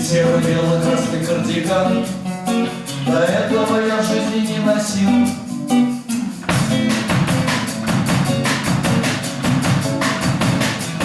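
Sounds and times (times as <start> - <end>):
acoustic band playing: 0.0 - 11.0.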